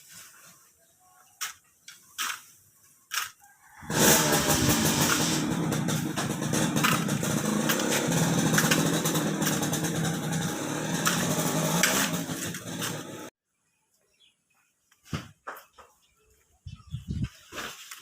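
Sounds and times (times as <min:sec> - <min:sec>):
engine running: 0:03.8 - 0:13.3
knocks and rattles: 0:03.9 - 0:13.3.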